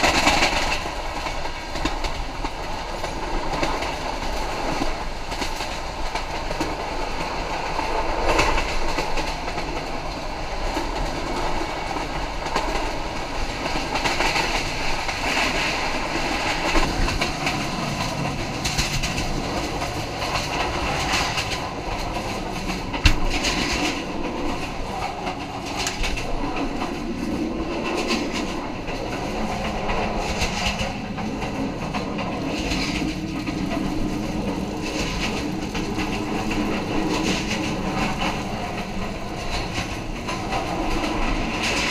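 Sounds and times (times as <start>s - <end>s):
train wheels clattering over rails: 0.0s - 41.9s.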